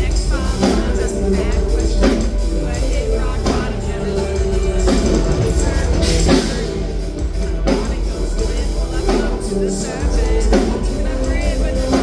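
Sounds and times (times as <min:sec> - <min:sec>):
rock band playing live: 0:00.0 - 0:12.0.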